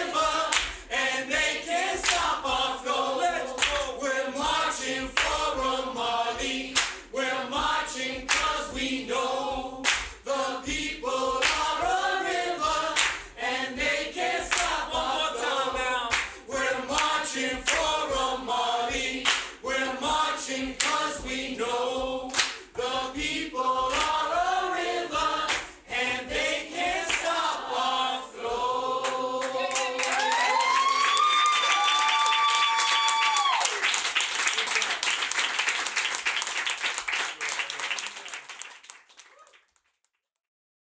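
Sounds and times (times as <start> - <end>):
hand claps: 0.0 - 27.4, 29.0 - 40.2
group chanting a cappella: 0.0 - 30.7.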